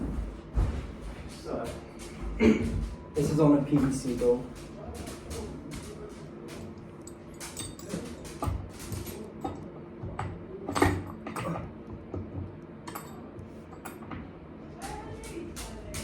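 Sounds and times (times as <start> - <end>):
metal tools clinking and knocking: 6.5 - 9.7, 10.7 - 11.7, 12.9 - 14.2.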